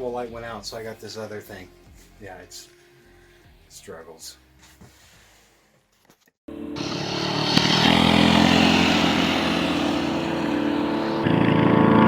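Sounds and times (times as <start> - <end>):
small engine running: 6.8 - 12.0.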